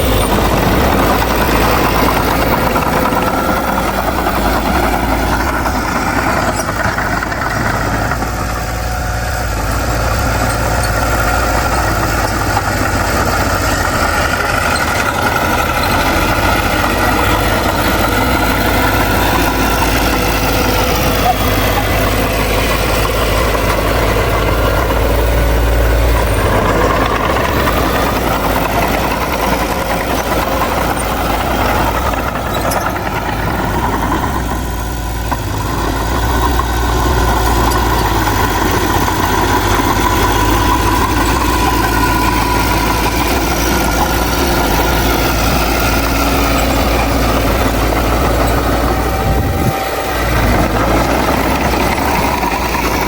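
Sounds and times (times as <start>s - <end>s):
diesel engine running: 0.0s - 53.0s.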